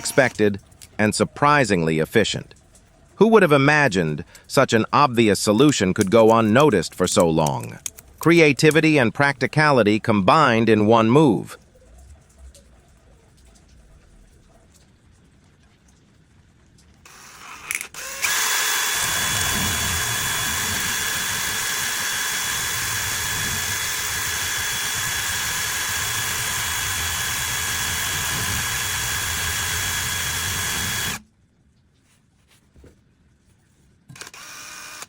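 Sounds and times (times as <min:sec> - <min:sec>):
power drill running: 0:00.0 - 0:00.5, 0:17.1 - 0:31.2, 0:34.1 - 0:35.0
clicks: 0:05.6 - 0:08.8.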